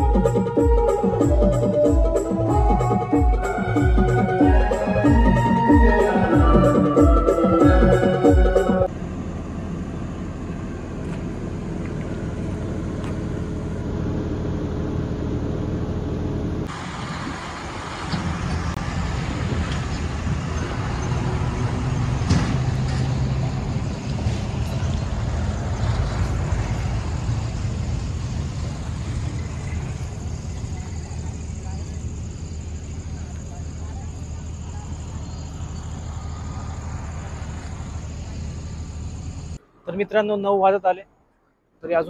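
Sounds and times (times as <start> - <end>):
engine idling: 22.3 - 39.6.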